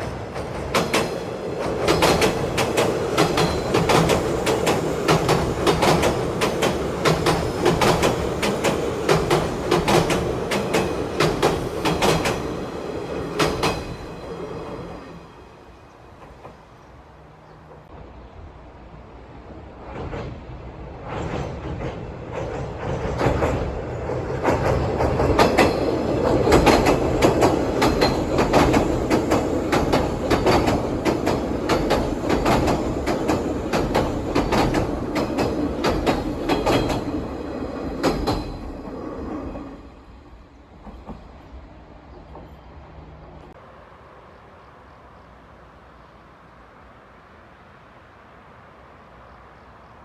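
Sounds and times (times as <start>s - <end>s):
train wheels clacking over rails: 0.0s - 18.2s, 19.8s - 39.9s, 40.7s - 41.5s
train rumble: 0.0s - 50.0s.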